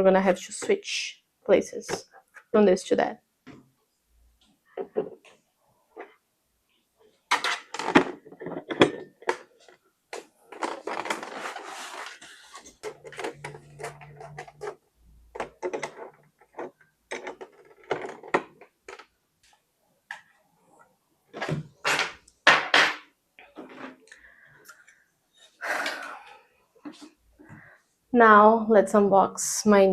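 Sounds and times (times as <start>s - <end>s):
rustling: 10.4s - 14.8s.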